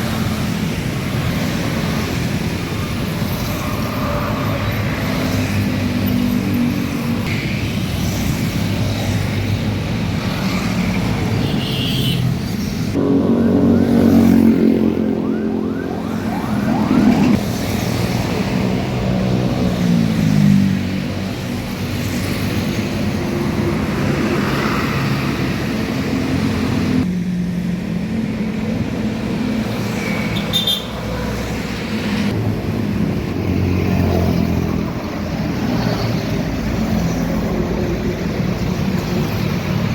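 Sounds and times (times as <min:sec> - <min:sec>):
road traffic: 0:00.0 - 0:39.9
bus engine passing: 0:12.7 - 0:29.6
multi-tone bus horn tune: 0:13.0 - 0:16.1.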